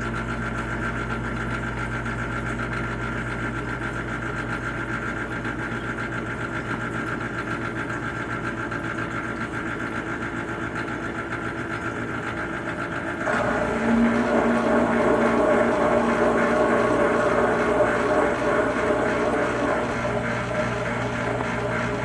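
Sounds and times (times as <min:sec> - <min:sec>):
dishwasher motor and pump hum: 0:00.0 - 0:22.0
higher hum: 0:13.2 - 0:22.0.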